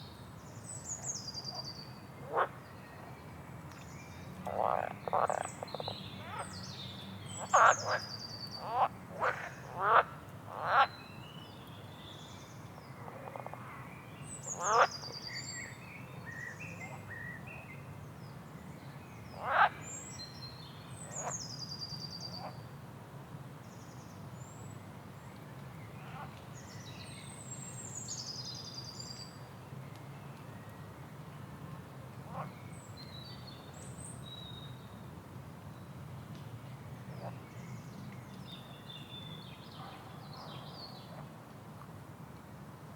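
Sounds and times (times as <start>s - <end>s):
low background noise: 0.0s - 42.9s
frogs croaking: 2.2s - 2.5s, 4.5s - 6.4s, 7.4s - 10.9s, 14.6s - 15.0s.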